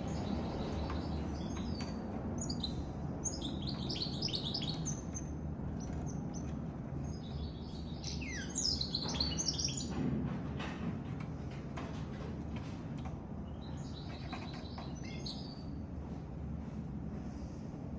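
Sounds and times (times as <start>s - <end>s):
bird twittering chirps: 0.0s - 9.9s, 13.4s - 15.8s.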